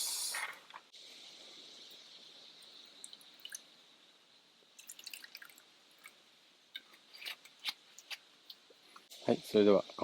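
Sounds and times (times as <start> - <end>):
liquid dripping into cup: 4.7 - 6.2.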